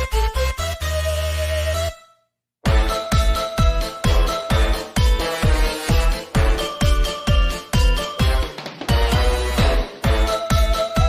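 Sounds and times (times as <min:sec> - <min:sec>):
electronic dance music: 0:02.7 - 0:11.0
kick drum beat: 0:02.7 - 0:11.0.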